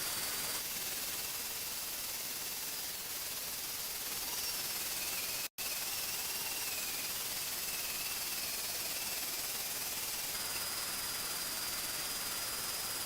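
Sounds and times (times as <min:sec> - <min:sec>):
faint high whine: 0:00.0 - 0:13.0
welding arc crackling hiss: 0:00.0 - 0:13.0.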